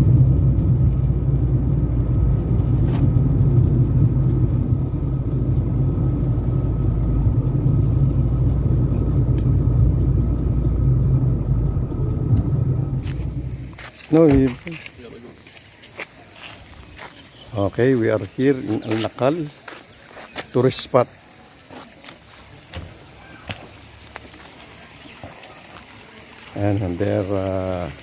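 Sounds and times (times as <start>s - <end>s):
car driving rumble from inside: 0.0s - 14.7s.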